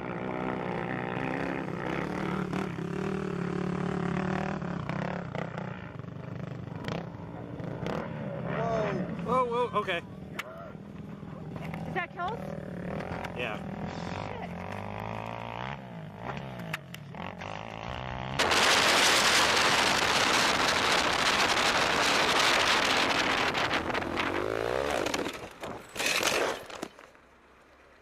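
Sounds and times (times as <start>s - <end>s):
small engine revving: 11.6s - 26.9s.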